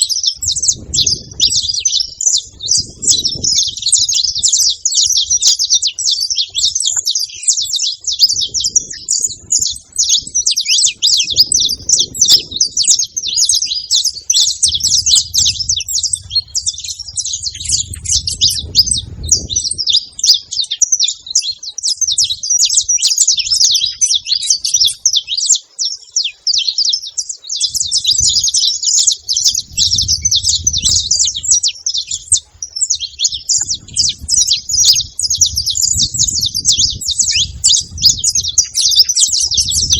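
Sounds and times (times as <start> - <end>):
finches chirping: 0.0 - 39.9
low rumble: 14.2 - 19.8.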